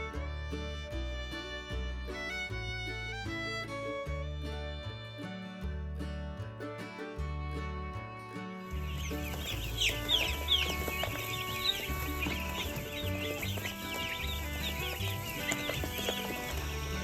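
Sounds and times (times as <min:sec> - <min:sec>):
background music: 0:00.0 - 0:17.0
chickens chirping: 0:08.7 - 0:17.0.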